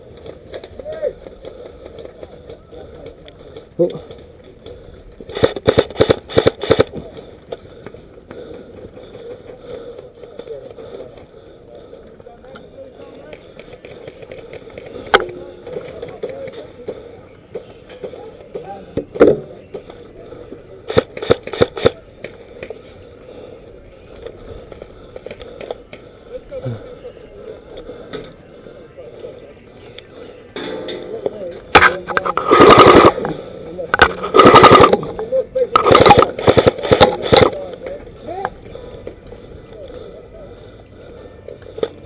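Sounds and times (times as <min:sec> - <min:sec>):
airsoft rifle shots: 0:05.3 - 0:07.0, 0:20.9 - 0:22.0, 0:31.8 - 0:33.2, 0:34.0 - 0:35.1, 0:35.8 - 0:37.6.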